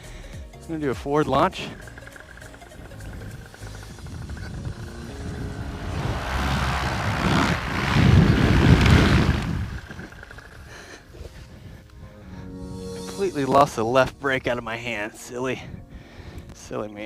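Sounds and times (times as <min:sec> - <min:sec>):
paramotor engine and propeller: 0:01.5 - 0:11.4.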